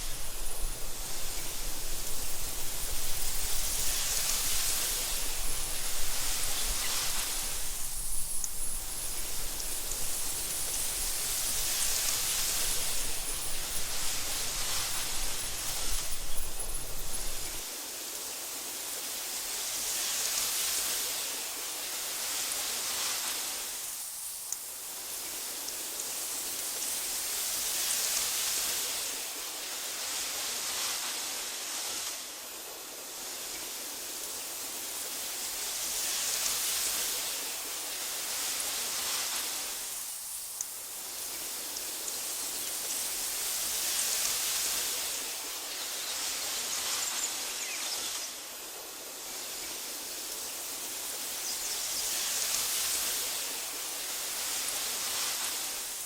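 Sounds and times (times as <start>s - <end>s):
wind through tall grass: 0.0s - 56.0s.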